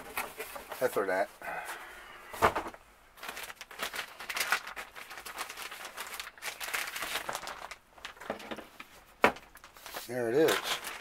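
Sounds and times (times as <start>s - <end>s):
packaging rustling and crinkling: 2.4s - 11.0s.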